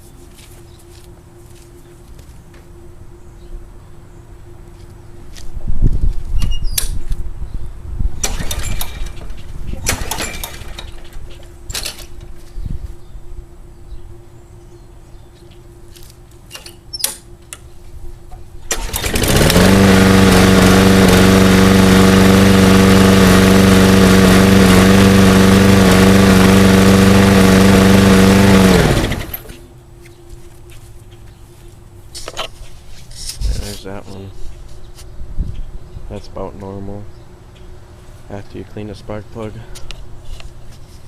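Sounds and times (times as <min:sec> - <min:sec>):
small gas engine running: 0:08.2 - 0:09.2, 0:18.7 - 0:29.6.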